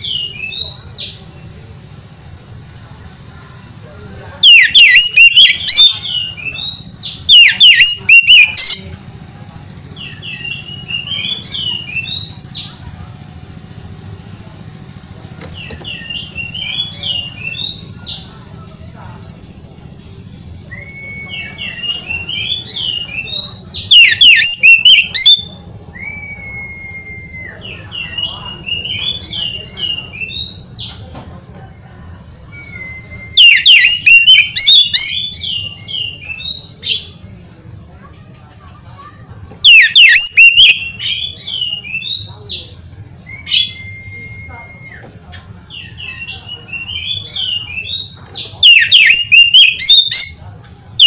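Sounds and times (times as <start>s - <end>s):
magpie-robin singing: 0.0s - 1.4s, 4.4s - 9.0s, 10.0s - 12.8s, 15.4s - 18.4s, 20.7s - 26.6s, 27.2s - 31.0s, 32.4s - 37.2s, 38.3s - 51.0s
steady low hum: 7.9s - 24.3s.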